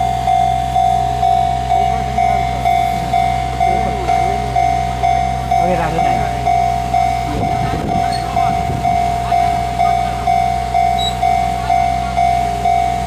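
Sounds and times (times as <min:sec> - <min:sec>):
level crossing warning bell: 0:00.0 - 0:13.0.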